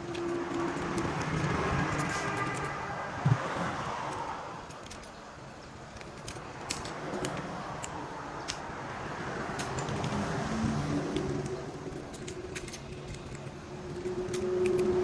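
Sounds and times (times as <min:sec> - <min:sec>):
hand tools clicking and tapping: 0:00.0 - 0:15.0.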